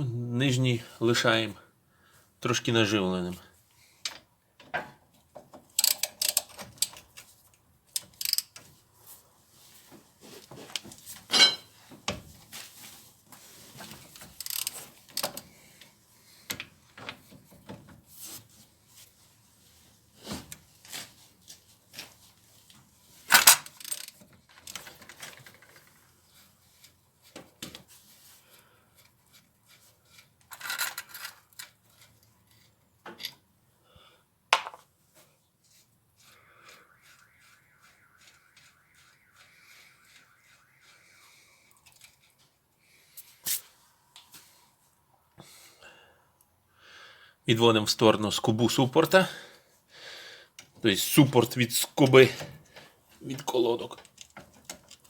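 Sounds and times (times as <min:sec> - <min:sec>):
hand tools clicking and clinking: 0:05.7 - 0:07.2, 0:07.9 - 0:08.6.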